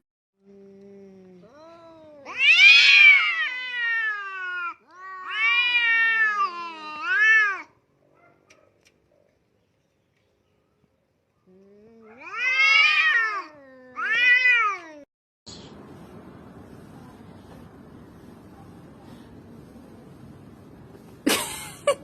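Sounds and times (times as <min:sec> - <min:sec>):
faint low moan: 0:00.4 - 0:02.3, 0:11.5 - 0:12.2
cat meowing: 0:01.5 - 0:07.7, 0:12.0 - 0:15.0.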